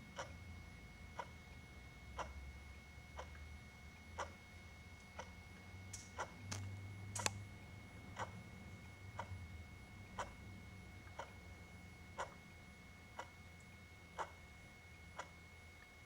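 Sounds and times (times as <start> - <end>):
sharp clicks: 6.0 - 7.4
clock ticking: 12.2 - 12.4.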